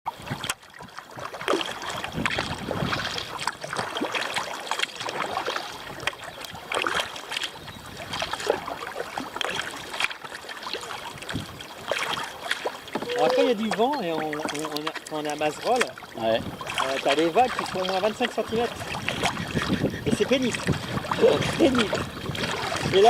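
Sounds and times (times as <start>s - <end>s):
paddle splashing in water: 0.1s - 23.0s.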